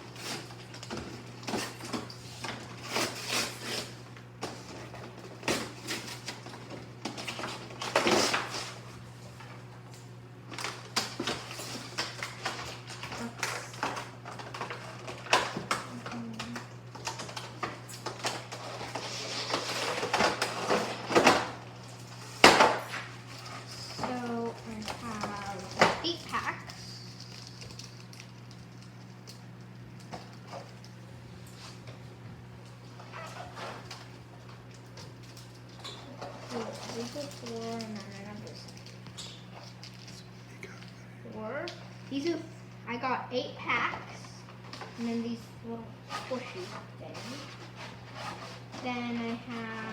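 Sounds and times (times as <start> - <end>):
steady low hum: 0.0 - 49.9
packaging rustling and crinkling: 10.5 - 31.9, 32.8 - 41.0.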